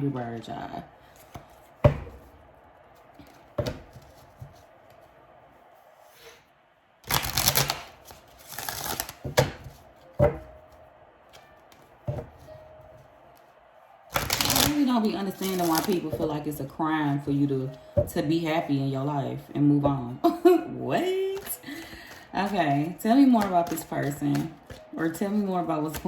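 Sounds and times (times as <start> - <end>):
cards being shuffled: 7.0 - 10.3, 14.1 - 14.8, 15.4 - 16.3, 21.3 - 24.8.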